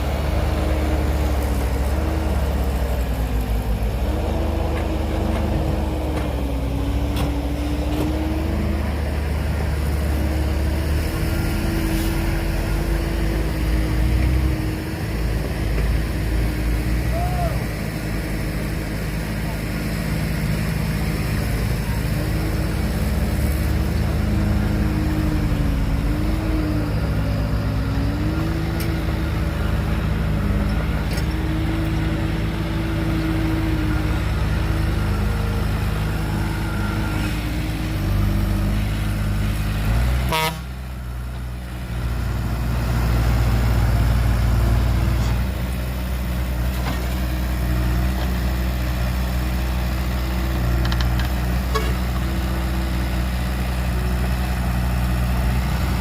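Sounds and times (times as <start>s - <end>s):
diesel machinery running: 0.0s - 56.0s.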